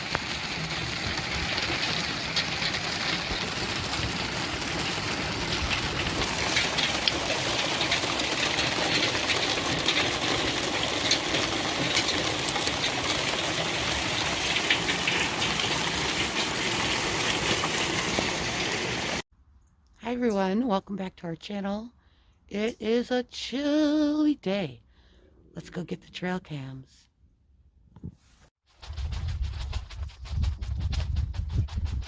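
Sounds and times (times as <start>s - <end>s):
hail falling: 0.0s - 19.2s.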